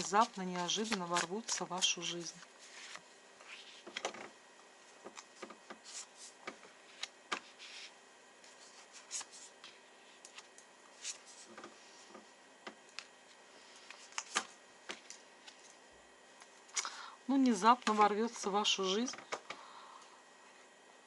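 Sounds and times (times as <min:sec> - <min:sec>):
cards being shuffled: 0:00.0 - 0:04.3, 0:05.0 - 0:12.2, 0:13.0 - 0:15.8, 0:17.8 - 0:18.5.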